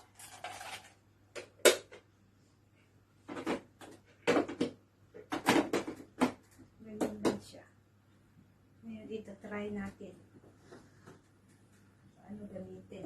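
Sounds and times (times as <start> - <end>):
plastic knocks and clicks: 3.3 - 7.5.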